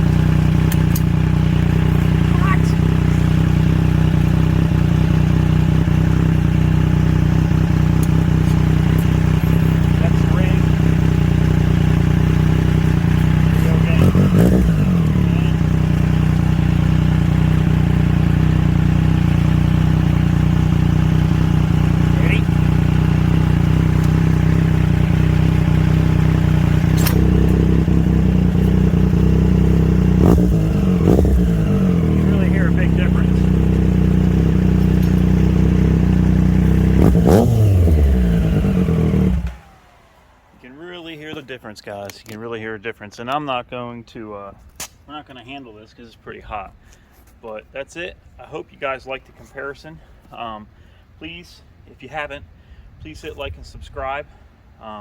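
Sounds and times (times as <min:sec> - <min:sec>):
motorcycle engine idling: 0:00.0 - 0:41.4
sharp click: 0:26.9 - 0:27.6, 0:44.7 - 0:45.0.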